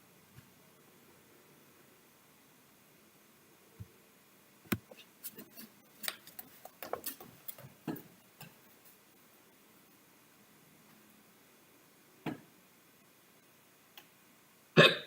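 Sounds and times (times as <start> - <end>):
sharp clicks and taps: 4.7 - 5.0.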